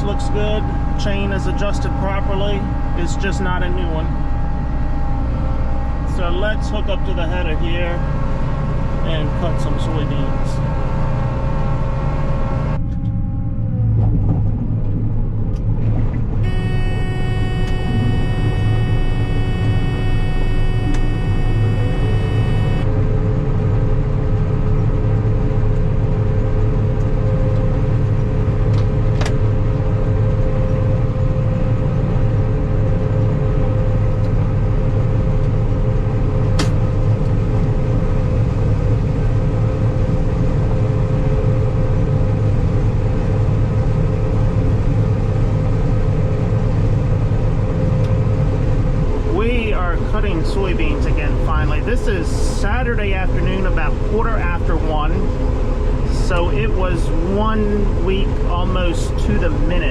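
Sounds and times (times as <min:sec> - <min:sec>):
combine harvester engine hum: 0:00.0 - 0:59.9
high steady tone: 0:16.4 - 0:22.9.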